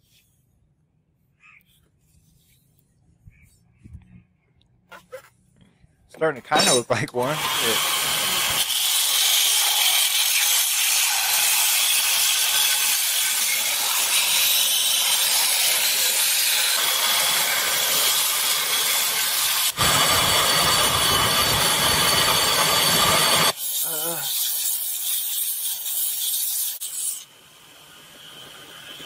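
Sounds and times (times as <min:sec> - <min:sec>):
power tool grinding steel: 0:06.5 - 0:29.0.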